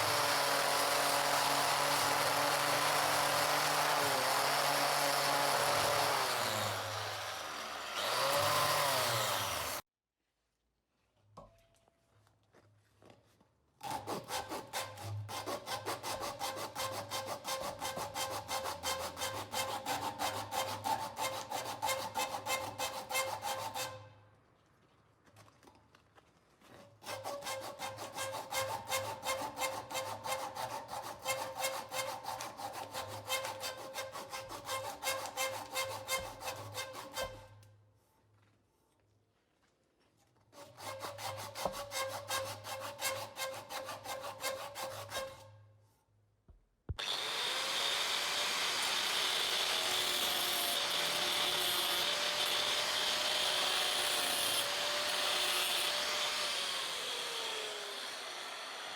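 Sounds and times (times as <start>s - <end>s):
hand filing wood: 13.8s - 24.0s, 26.7s - 37.5s, 40.5s - 45.5s.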